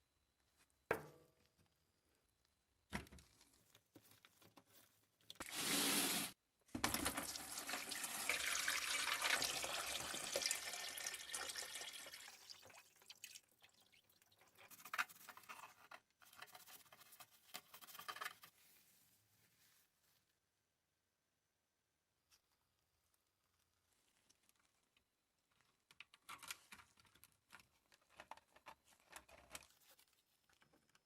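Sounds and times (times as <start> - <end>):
water running and splashing: 7.3 - 14.0.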